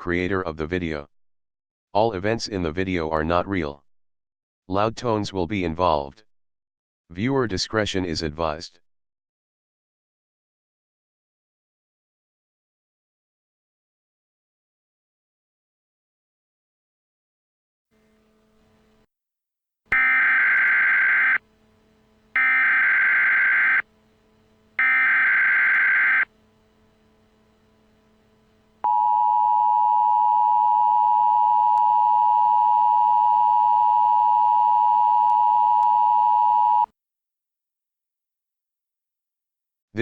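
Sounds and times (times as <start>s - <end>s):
harsh digital data bursts: 19.9s - 21.5s, 22.3s - 24.1s, 24.7s - 26.4s
two-tone attention signal: 19.9s - 21.5s, 22.4s - 24.0s, 24.8s - 26.3s.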